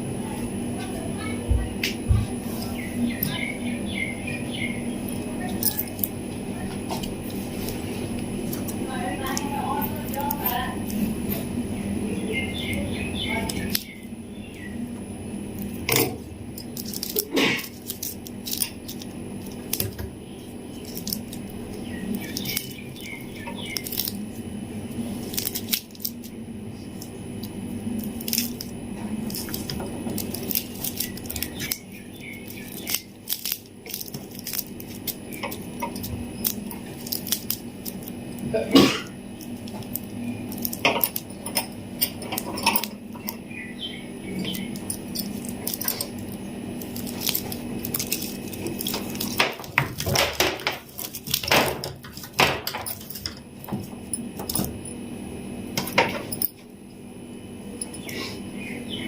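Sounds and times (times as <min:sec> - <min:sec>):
steady low hum: 0:00.0 - 0:59.0
candy wrappers crinkling and clicking: 0:05.0 - 0:11.4, 0:15.5 - 0:54.8.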